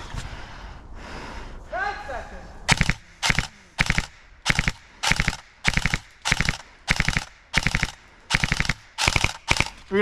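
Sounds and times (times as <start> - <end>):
airsoft gun firing bursts: 2.7 - 10.0.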